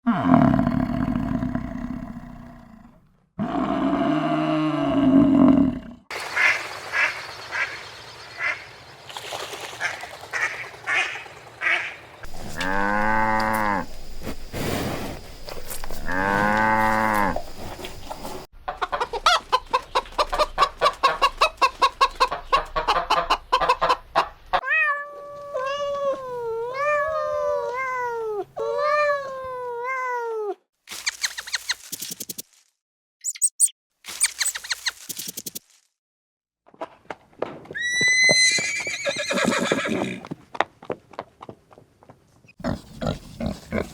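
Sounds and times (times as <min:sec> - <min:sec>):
deep animal call: 0:00.0 - 0:06.0, 0:12.2 - 0:14.3, 0:15.5 - 0:18.4
cat meowing: 0:24.6 - 0:30.6.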